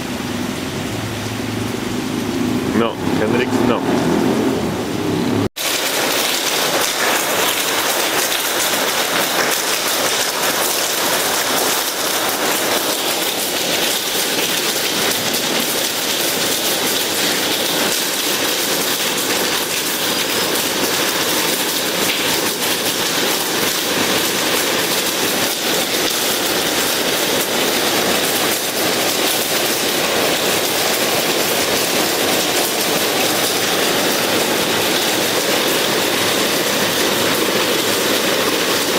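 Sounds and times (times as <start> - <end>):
heavy rain and hail pelting: 5.6 - 38.9.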